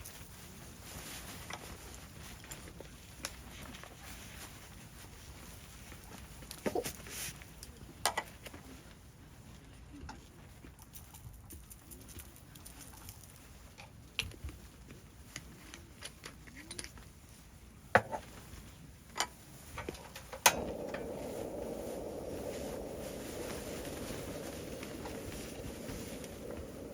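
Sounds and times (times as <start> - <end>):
steady rushing noise: 20.2 - 26.9.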